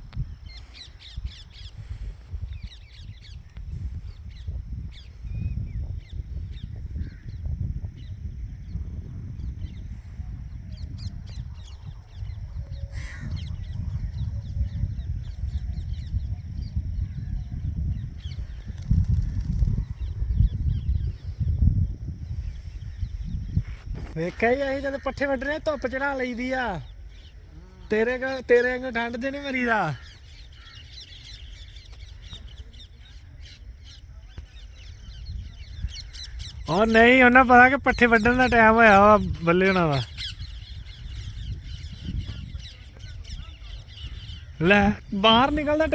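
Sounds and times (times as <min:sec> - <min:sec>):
birds chirping: 0:00.1 - 0:45.9
harsh bird call: 0:24.2 - 0:32.7, 0:35.8 - 0:45.9.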